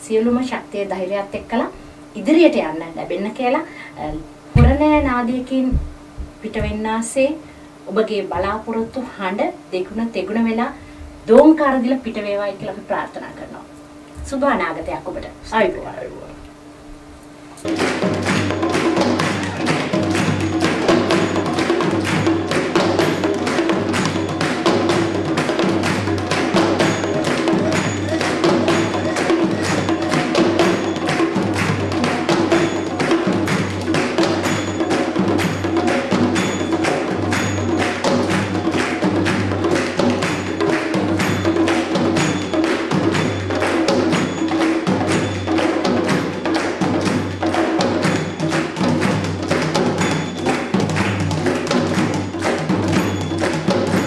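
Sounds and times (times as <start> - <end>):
drum ensemble fast rhythm: 4.0 - 7.0, 17.6 - 54.0
steady held tone: 13.4 - 46.5.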